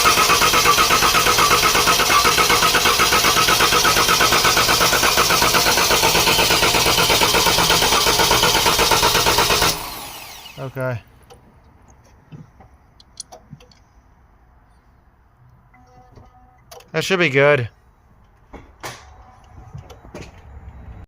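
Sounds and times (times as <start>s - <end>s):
engine starter cranking: 0.0s - 11.4s.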